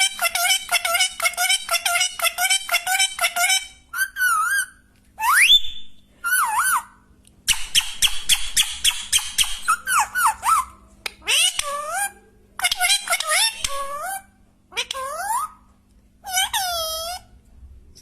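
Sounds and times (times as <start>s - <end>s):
parrot chattering: 0.0s - 5.6s, 6.2s - 15.6s, 16.2s - 17.3s
parrot warbling whistles: 4.0s - 6.9s.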